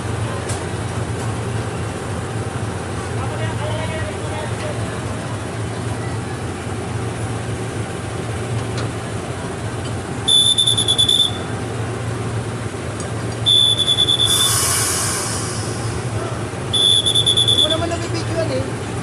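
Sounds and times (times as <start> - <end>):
train locomotive low hum: 0.0 - 19.0
burst of hiss: 14.0 - 16.2.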